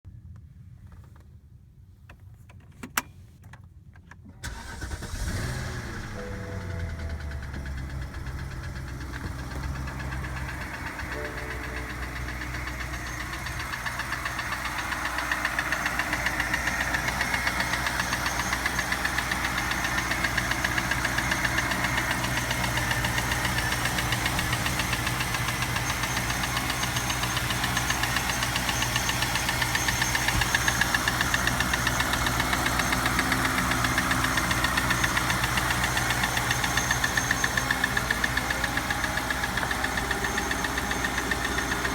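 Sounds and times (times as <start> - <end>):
engine with rhythmic knocking: 4.4 - 41.9.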